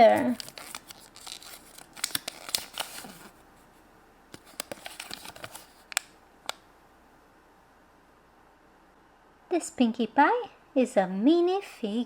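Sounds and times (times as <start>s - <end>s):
plastic packaging clicks: 0.0s - 3.3s, 4.3s - 6.6s
paper flyer rustling: 0.0s - 3.8s, 4.4s - 6.1s.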